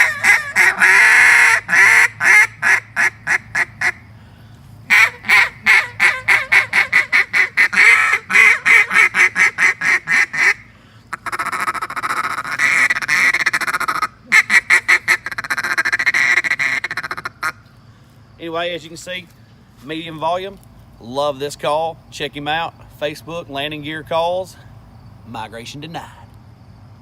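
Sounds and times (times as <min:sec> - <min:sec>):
duck call blown by mouth: 0:00.0 - 0:04.0, 0:04.9 - 0:17.6.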